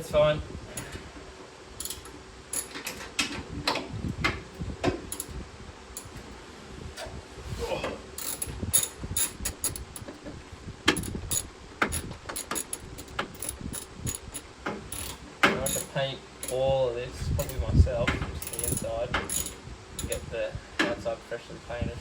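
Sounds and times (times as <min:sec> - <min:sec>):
ratchet wrench clicking: 0:01.8 - 0:02.8, 0:05.1 - 0:05.3, 0:08.2 - 0:10.1, 0:11.0 - 0:16.6, 0:18.4 - 0:20.3
tool knocks: 0:08.2 - 0:10.2, 0:10.9 - 0:16.6.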